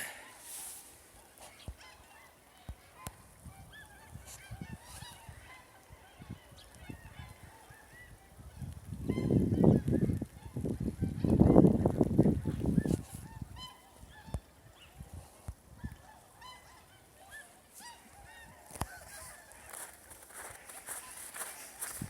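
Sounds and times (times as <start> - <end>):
waterfowl honking: 1.3 - 8.4, 12.9 - 14.9, 15.8 - 22.0.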